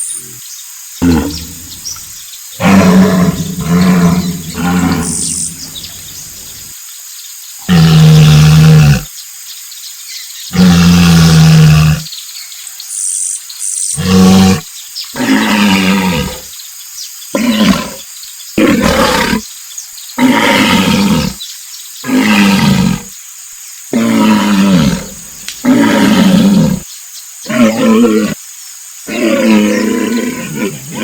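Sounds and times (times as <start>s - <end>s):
hippopotamus calling: 1.0s - 6.7s.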